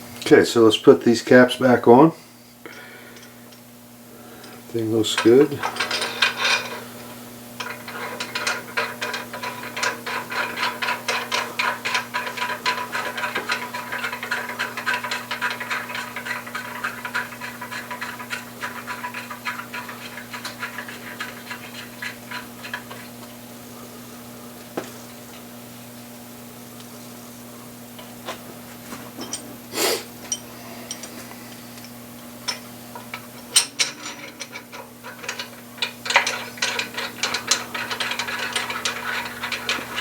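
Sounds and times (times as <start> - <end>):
hand ratchet clicking: 30.3 - 40.0.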